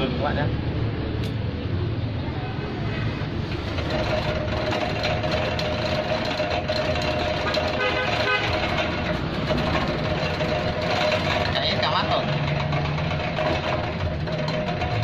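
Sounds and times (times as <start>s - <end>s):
slicing machine running with whine: 3.6s - 15.0s.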